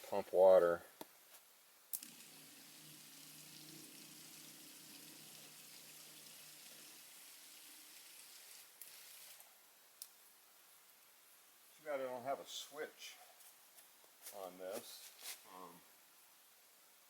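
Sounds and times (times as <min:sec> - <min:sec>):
faint steady hiss: 0:00.0 - 0:17.0
water pump humming: 0:02.0 - 0:09.5.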